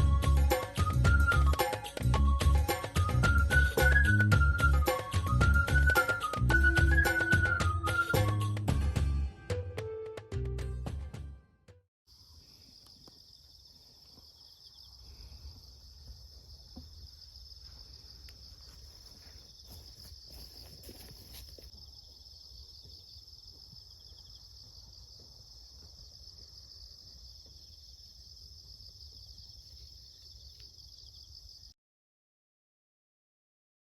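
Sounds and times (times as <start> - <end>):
insects trilling: 12.1 - 31.8.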